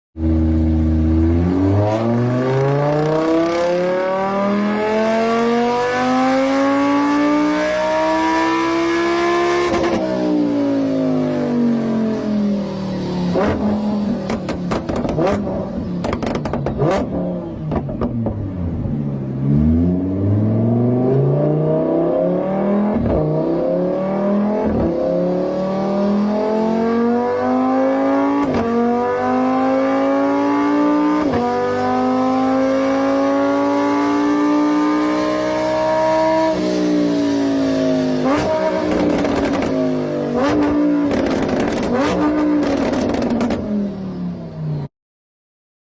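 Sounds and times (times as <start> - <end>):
car engine revving: 0.2 - 44.4
engine crackles and clicks: 9.6 - 10.1, 13.3 - 18.7, 38.2 - 43.8.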